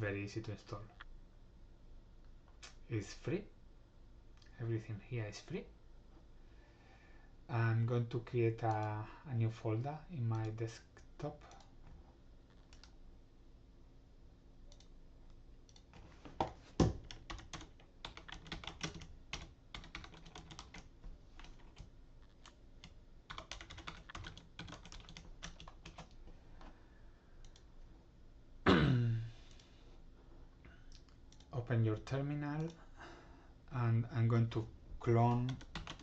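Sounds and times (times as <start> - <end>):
typing on computer keyboard: 12.5 - 12.9, 16.8 - 26.2, 35.4 - 36.0
brief vocal sound: 28.7 - 29.3.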